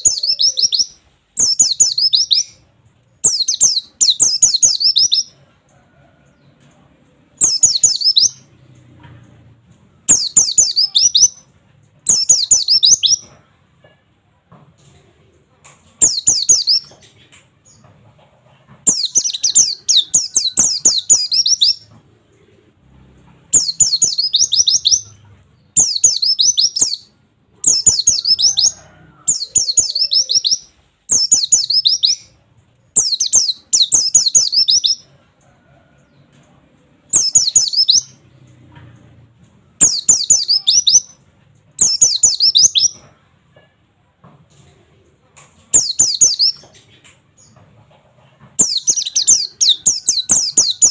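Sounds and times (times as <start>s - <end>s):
white-eye bird singing: 0.0s - 2.6s, 3.2s - 5.4s, 7.3s - 8.6s, 10.0s - 13.3s, 16.0s - 17.9s, 18.8s - 22.0s, 23.5s - 35.1s, 37.1s - 38.3s, 39.8s - 41.2s, 41.8s - 43.0s, 45.7s - 47.6s, 48.6s - 50.9s.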